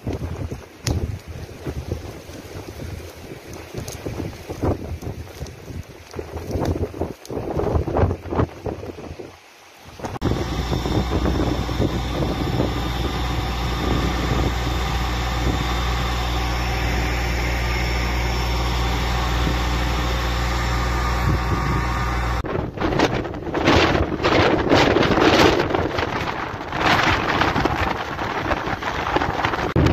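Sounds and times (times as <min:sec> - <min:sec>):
engine running with low hum: 0:09.9 - 0:22.7.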